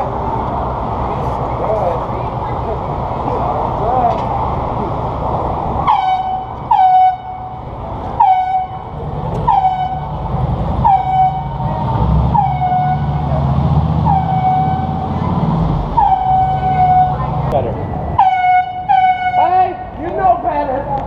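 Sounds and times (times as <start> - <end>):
air horn blasts: 5.9 - 7.6, 8.2 - 10.1, 14.0 - 15.0, 16.0 - 17.3, 18.2 - 19.8.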